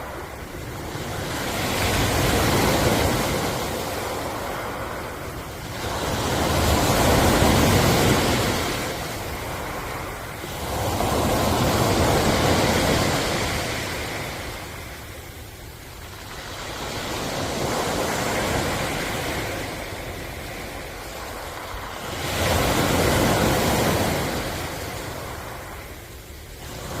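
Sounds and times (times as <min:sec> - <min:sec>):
ocean waves breaking: 0:00.0 - 0:27.0.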